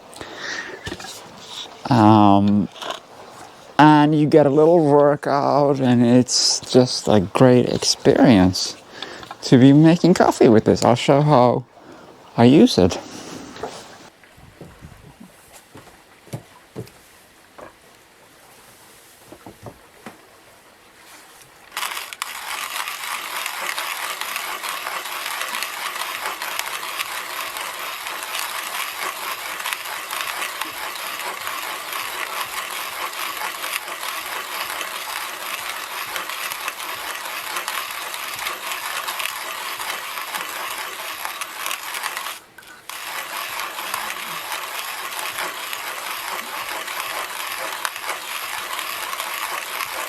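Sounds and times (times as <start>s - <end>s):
hand coffee grinder grinding: 0.1s - 4.0s, 5.8s - 10.9s, 21.7s - 50.0s.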